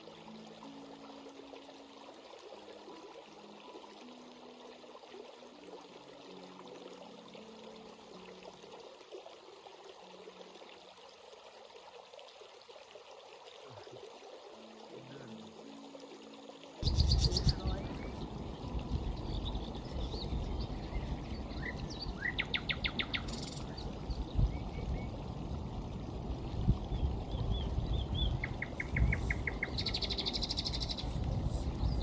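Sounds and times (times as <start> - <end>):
stream water flowing: 0.0 - 32.0
birds singing trills: 16.8 - 25.2, 26.9 - 32.0.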